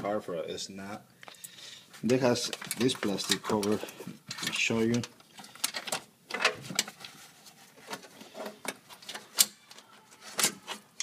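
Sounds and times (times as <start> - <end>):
plastic parts clicking and knocking: 2.1 - 7.2, 7.8 - 11.0.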